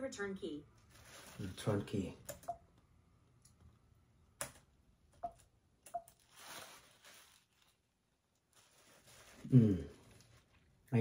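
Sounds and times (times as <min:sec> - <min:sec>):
soft rustle: 0:00.8 - 0:01.8, 0:06.2 - 0:10.8.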